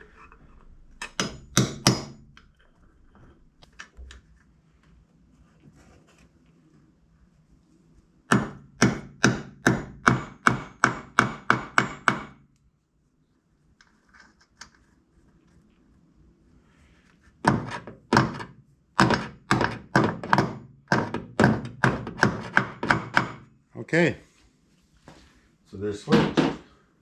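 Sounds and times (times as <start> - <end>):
hammer strikes on metal: 1.0 - 2.2, 8.3 - 12.4, 17.5 - 23.5.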